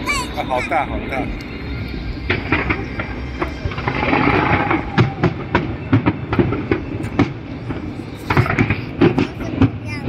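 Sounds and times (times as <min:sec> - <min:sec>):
crackling hiss of fireworks: 0:00.0 - 0:10.0
fireworks bangs and pops: 0:02.2 - 0:10.0.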